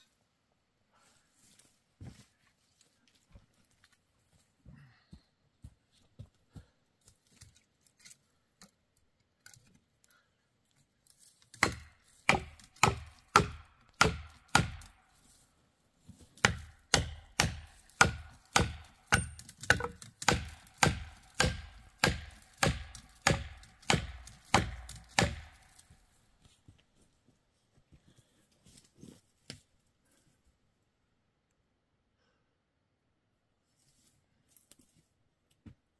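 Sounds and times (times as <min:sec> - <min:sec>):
wedges struck with heavy blows: 0:11.6 - 0:14.8, 0:16.4 - 0:25.6.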